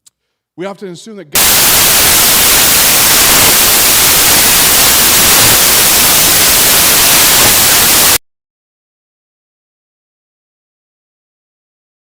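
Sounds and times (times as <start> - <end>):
loud static hiss: 1.4 - 8.2.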